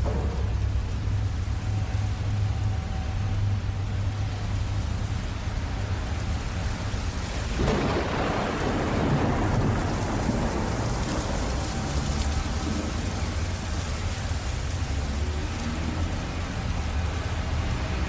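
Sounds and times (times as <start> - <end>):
steady rain: 0.0 - 18.0
thunder rolling: 7.3 - 13.9.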